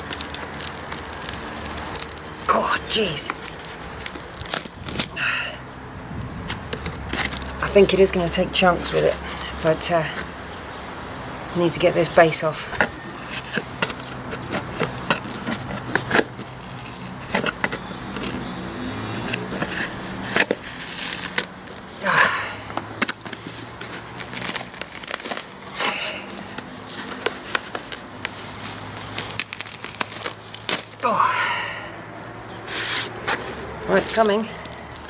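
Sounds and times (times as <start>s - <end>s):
foam tearing and crackling: 0.0s - 5.4s, 6.4s - 10.2s, 12.6s - 31.2s, 32.0s - 35.0s
sharp clicks and scrapes: 6.2s - 8.0s, 12.7s - 21.9s, 23.0s - 31.0s.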